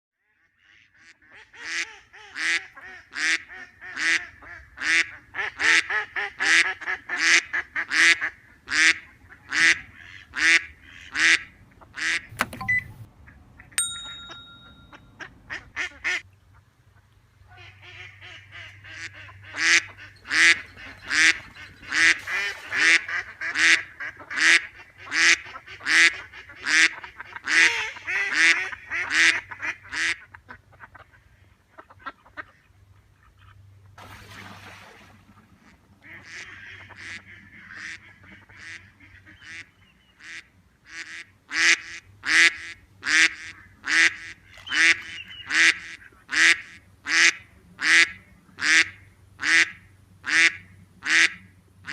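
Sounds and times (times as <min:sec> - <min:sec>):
ducks quacking: 0:00.5 - 0:12.3, 0:15.2 - 0:33.6, 0:35.5 - 0:51.9
brief high ringing tone: 0:12.5 - 0:13.1, 0:13.8 - 0:15.1.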